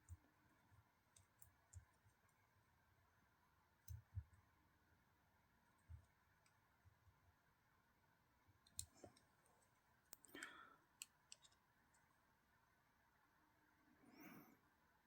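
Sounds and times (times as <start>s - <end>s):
small screwdriver and screws clicking: 11.0s - 11.6s.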